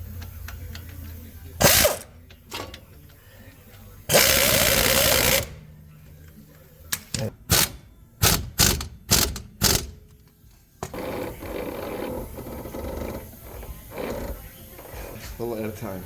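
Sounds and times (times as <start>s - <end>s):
impact wrench bursts: 1.6s - 3.0s, 4.1s - 5.7s, 7.0s - 10.1s, 10.8s - 15.0s.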